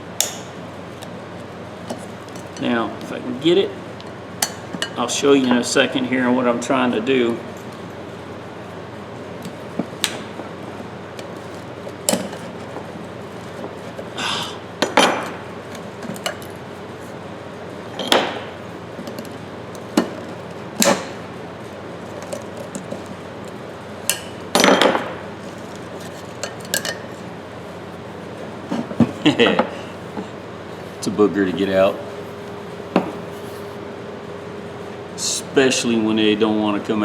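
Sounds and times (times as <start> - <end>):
screwdriver clinking on metal: 14.8 - 16.6, 25.4 - 27.2.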